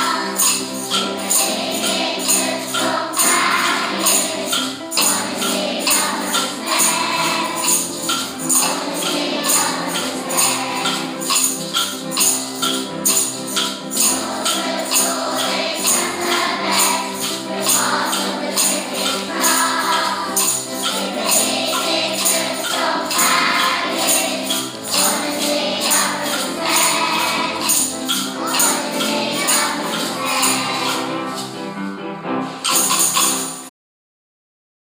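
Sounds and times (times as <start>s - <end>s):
people singing: 0.0s - 11.5s, 13.1s - 31.5s
tambourine beat: 0.0s - 33.7s
upbeat background music: 13.0s - 33.2s.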